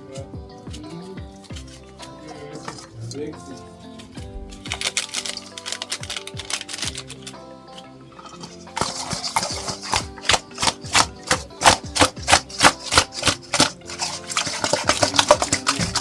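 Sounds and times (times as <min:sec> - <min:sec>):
background music: 0:00.0 - 0:16.0
sharp clicking beats: 0:04.0 - 0:16.0.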